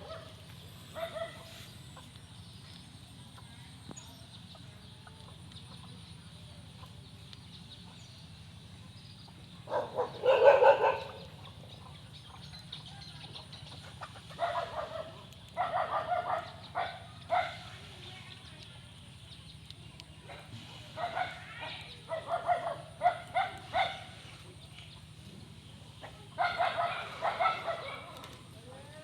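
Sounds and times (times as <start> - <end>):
cicadas droning: 0.0 - 29.0
chickens clucking: 4.5 - 18.1, 19.1 - 28.7.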